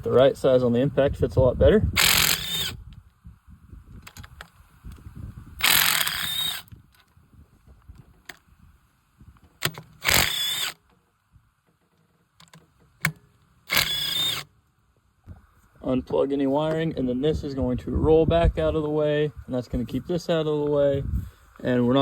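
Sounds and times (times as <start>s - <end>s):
impact driver running: 2.0s - 2.8s, 5.6s - 6.7s, 9.9s - 10.8s, 13.7s - 14.5s.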